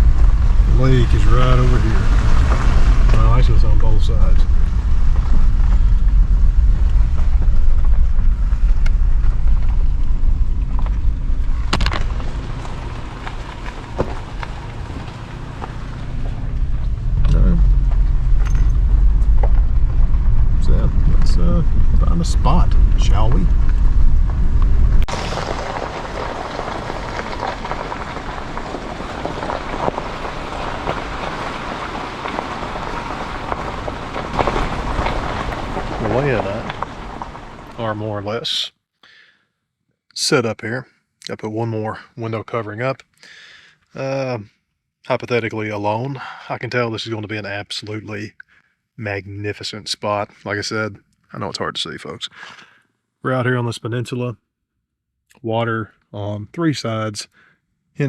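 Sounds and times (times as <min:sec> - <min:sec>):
steady rain falling: 0:00.0 - 0:24.4, 0:25.0 - 0:38.5
engine and tyres rumbling: 0:00.0 - 0:38.3
raindrop ticks: 0:22.1 - 0:37.9.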